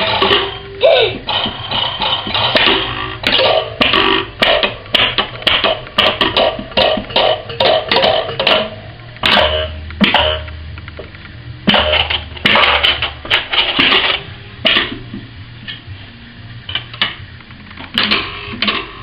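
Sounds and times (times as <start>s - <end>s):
struck kitchen object notes: 0.0s - 11.0s.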